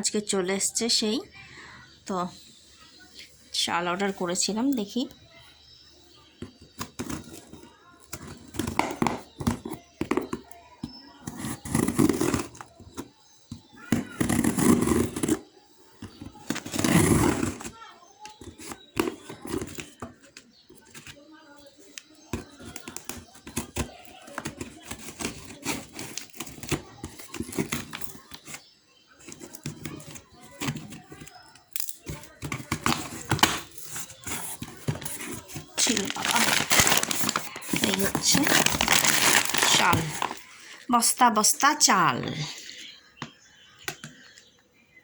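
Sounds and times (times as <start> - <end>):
knocks and taps on package: 6.4 - 14.4
packaging rustling: 32.1 - 40.5.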